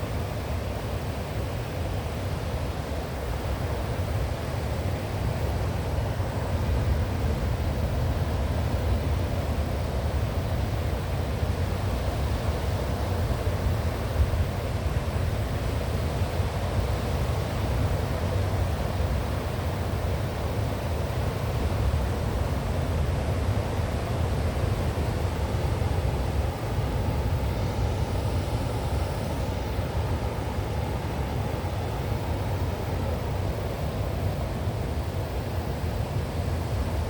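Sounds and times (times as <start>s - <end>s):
ocean surf: 10.8s - 37.0s.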